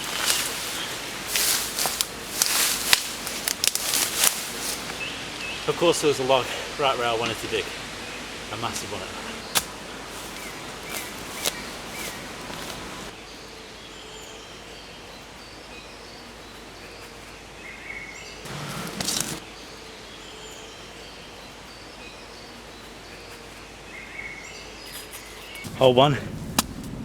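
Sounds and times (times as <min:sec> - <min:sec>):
wind in woodland: 0:00.0 - 0:27.0.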